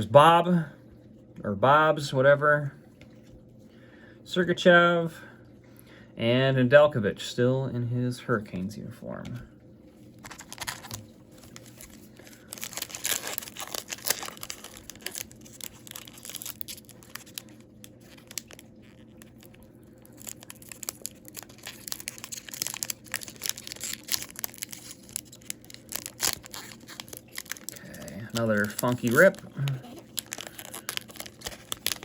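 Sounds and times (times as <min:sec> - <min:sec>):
foil wrapper tearing and crinkling: 0:10.2 - 0:32.0.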